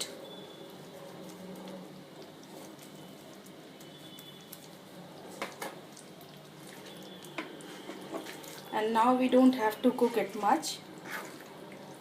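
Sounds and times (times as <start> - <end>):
gravy bubbling and sizzling: 0.0 - 12.0.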